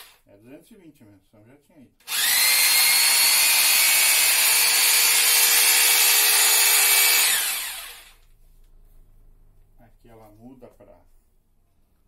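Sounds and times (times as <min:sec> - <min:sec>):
drill motor whine: 0:02.1 - 0:08.2.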